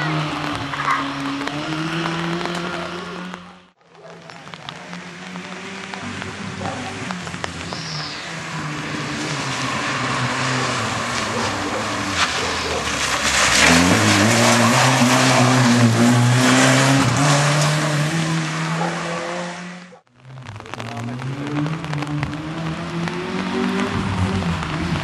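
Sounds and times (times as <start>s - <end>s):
rally car engine revving: 0.0s - 25.0s
tyre and road noise hiss: 4.4s - 14.8s.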